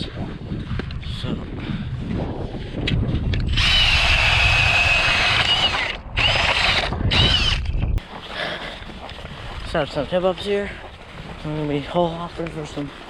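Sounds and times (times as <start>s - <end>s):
ice auger motor whine: 3.5s - 7.8s.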